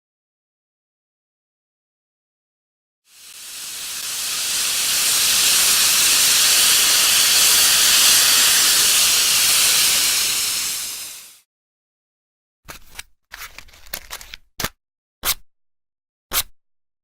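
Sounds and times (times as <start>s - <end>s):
hiss of escaping gas: 3.1s - 11.4s.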